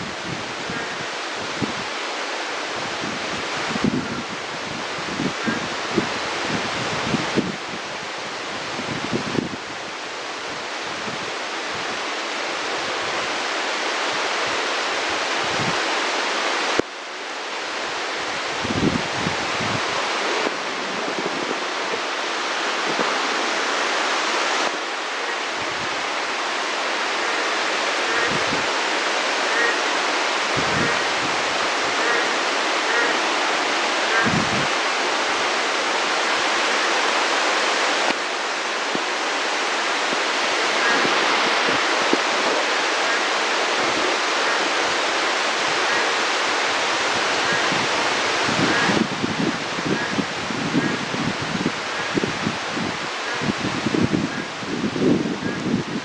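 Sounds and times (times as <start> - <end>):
heavy rain hissing: 0.0 - 56.0.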